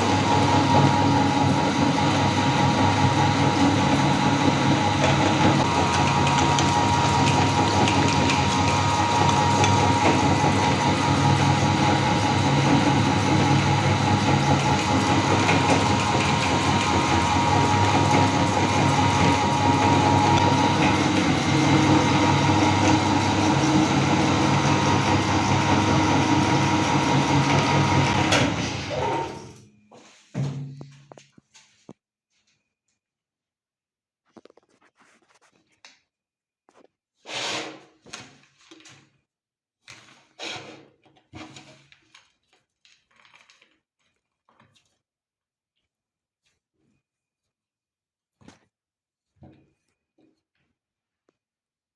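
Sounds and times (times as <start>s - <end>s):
electric meat grinder running: 0.0s - 29.6s.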